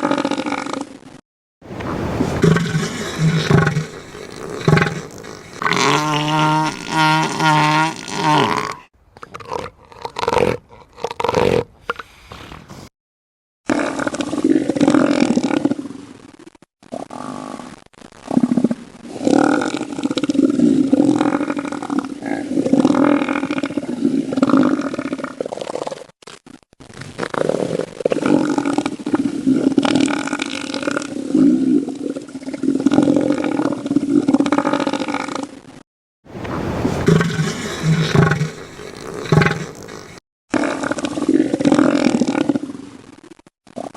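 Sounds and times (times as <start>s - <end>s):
elephant seal bellowing: 1.8s - 12.0s, 36.4s - 42.6s.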